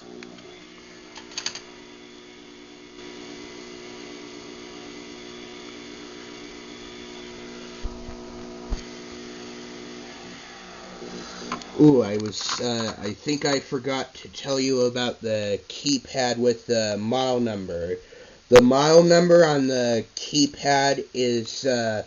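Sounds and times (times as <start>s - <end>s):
garage door opener motor humming: 0.0s - 12.2s.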